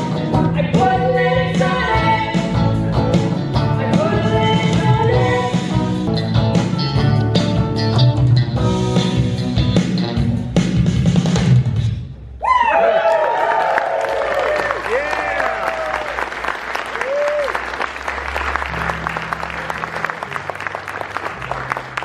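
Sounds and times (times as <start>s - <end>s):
electric guitar: 0.0s - 10.6s
bass guitar: 0.0s - 12.0s, 17.1s - 22.0s.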